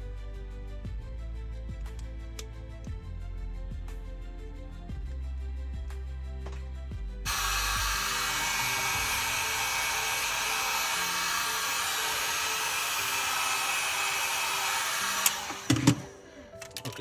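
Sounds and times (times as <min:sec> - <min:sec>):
quiet background music: 0:00.0 - 0:17.0
hot-air blower rushing: 0:07.3 - 0:16.3.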